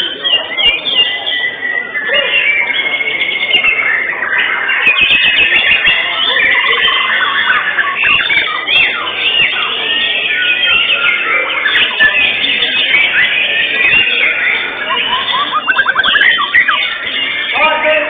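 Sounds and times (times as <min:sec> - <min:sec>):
songbirds singing together: 0:00.0 - 0:18.0.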